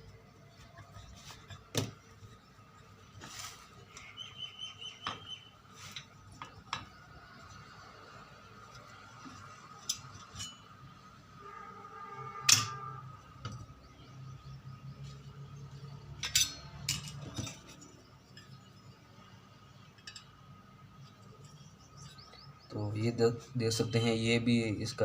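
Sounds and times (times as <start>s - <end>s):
metal parts clinking: 8.8s - 10.9s, 12.5s - 12.8s, 16.2s - 18.8s, 19.9s - 22.2s.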